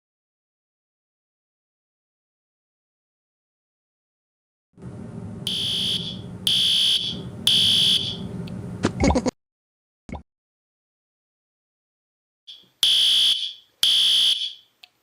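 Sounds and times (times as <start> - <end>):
low hum: 4.8 - 9.3
fire alarm beeping: 5.5 - 8.3, 12.5 - 14.7.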